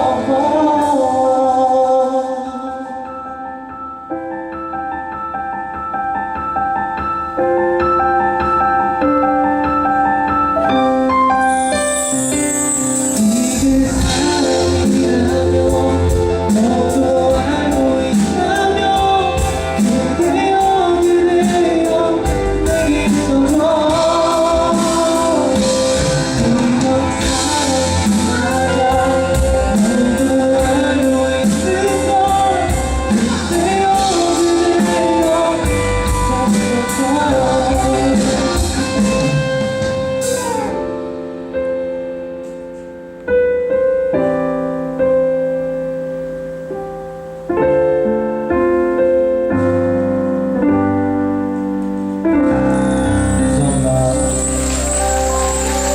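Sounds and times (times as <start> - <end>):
man singing pop ballad: 0.0 - 4.2, 11.9 - 40.8, 52.4 - 55.9
band playing: 0.0 - 43.7, 44.3 - 55.9
drum beat and cymbals: 11.6 - 40.7.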